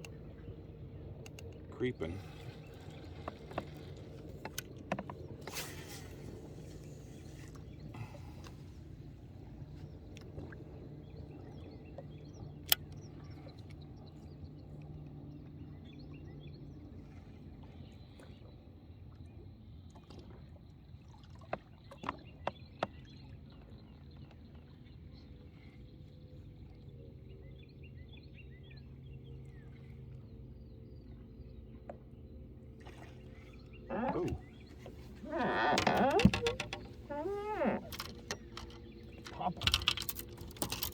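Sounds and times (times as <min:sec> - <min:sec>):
birds chirping: 0:00.0 - 0:16.9, 0:33.2 - 0:40.9
small birds chirping: 0:33.2 - 0:40.9.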